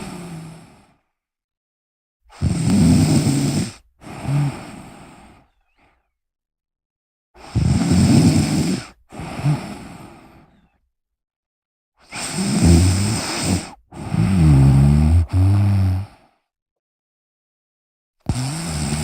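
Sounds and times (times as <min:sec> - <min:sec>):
person snoring: 0:00.0 - 0:01.0, 0:02.3 - 0:05.5, 0:07.4 - 0:10.8, 0:12.0 - 0:16.4, 0:18.3 - 0:19.0.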